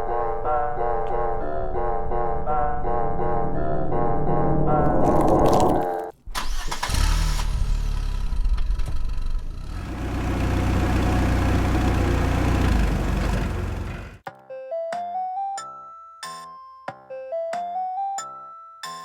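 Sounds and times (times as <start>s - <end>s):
engine starting and rumbling: 6.3s - 14.2s.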